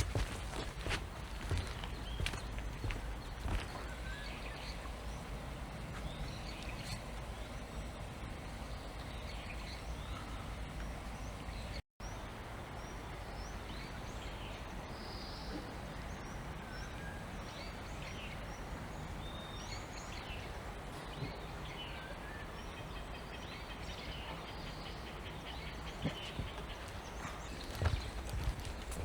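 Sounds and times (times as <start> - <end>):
birds chirping and calling: 0.0 - 7.1, 19.4 - 29.0.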